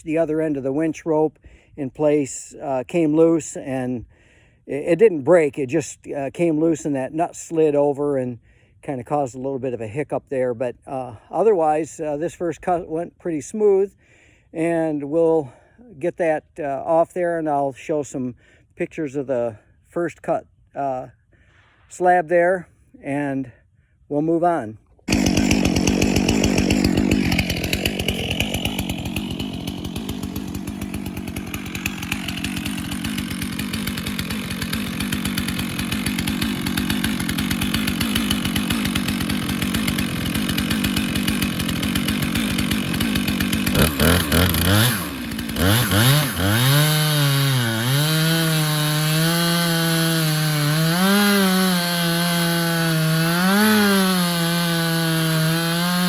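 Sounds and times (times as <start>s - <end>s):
chainsaw cutting log: 25.0s - 56.0s.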